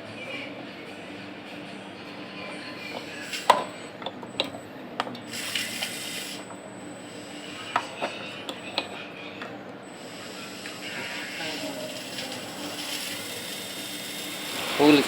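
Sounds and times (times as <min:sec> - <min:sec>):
sewing machine motor running: 0:11.9 - 0:15.0
short hiss: 0:12.7 - 0:15.0.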